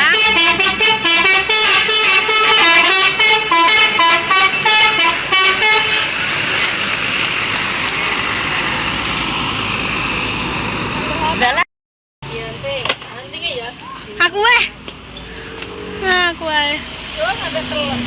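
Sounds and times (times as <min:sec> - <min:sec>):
multi-tone musical bus horn: 0:00.0 - 0:06.4.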